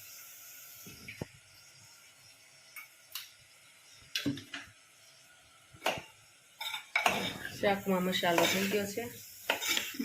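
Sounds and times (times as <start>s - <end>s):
faint hiss: 0.0s - 10.0s.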